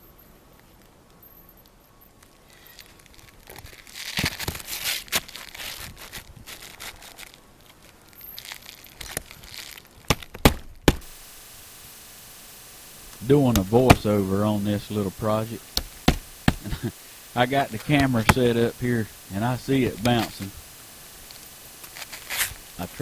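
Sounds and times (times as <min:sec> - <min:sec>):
roofing shingles crinkling and scraping: 0:00.1 - 0:23.0
sharp knocks: 0:15.8 - 0:16.7.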